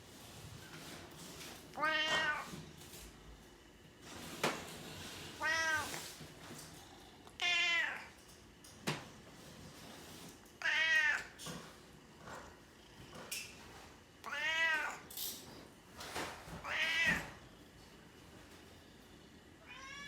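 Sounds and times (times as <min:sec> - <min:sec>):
cat meowing: 0:01.7 - 0:02.6, 0:05.4 - 0:06.1, 0:07.4 - 0:08.2, 0:10.6 - 0:11.4, 0:14.2 - 0:15.1, 0:16.6 - 0:17.4, 0:19.6 - 0:20.0.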